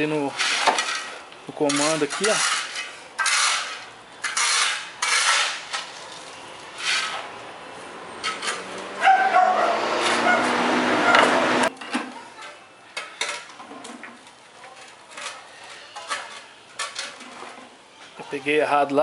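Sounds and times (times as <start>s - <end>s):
metal scraping with squeal: 0.3s - 7.3s, 8.1s - 11.7s
metal tools clattering: 0.4s - 5.9s, 8.2s - 8.8s, 14.7s - 17.6s.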